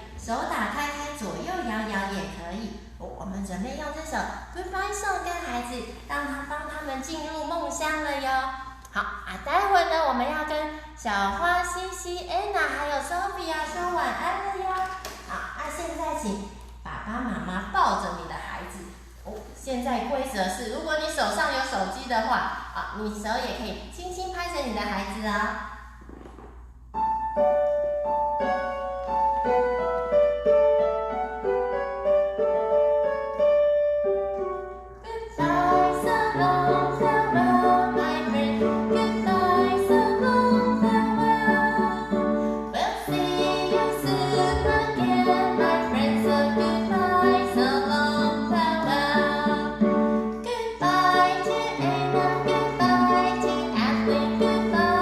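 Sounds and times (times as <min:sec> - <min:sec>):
piano melody: 0:26.9 - 0:55.0
woman singing: 0:35.0 - 0:55.0.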